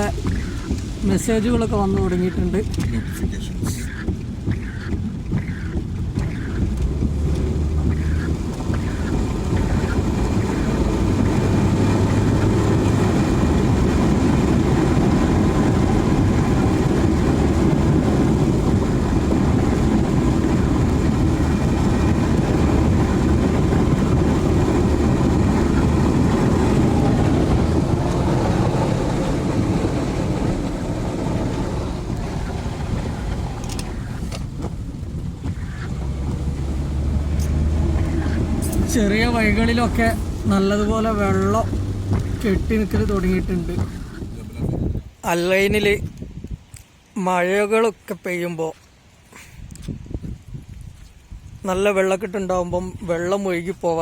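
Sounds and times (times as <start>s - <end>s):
car driving on wet road: 0.0s - 47.0s
faint clicks: 33.3s - 34.7s.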